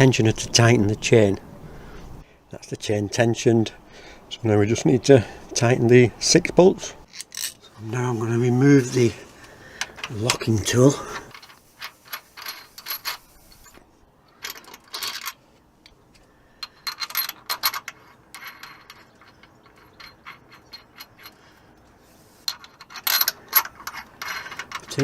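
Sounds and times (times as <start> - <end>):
metal tools clinking and scraping: 7.0 - 25.0.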